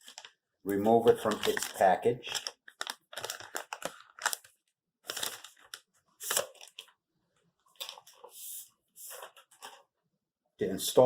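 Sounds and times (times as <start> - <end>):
packaging crinkling and tearing: 0.0 - 7.0, 7.7 - 8.4, 9.1 - 9.8.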